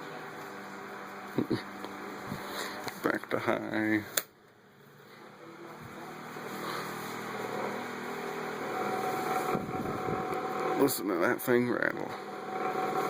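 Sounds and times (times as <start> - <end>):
desk fan whoosh and motor hum: 0.0 - 13.0
fan rattling: 5.8 - 13.0.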